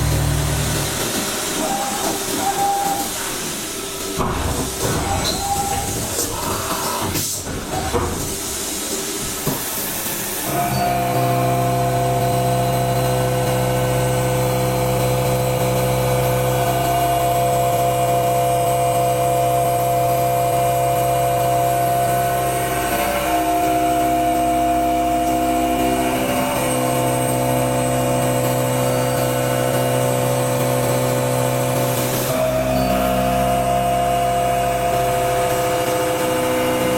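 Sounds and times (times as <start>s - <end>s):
milling machine cutting whine: 10.4s - 36.9s.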